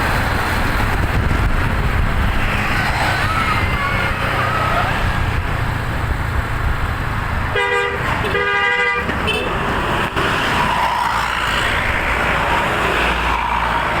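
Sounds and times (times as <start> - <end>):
traffic and engine rumble: 0.0 - 14.0
musical bus air horn blasts: 7.5 - 9.6.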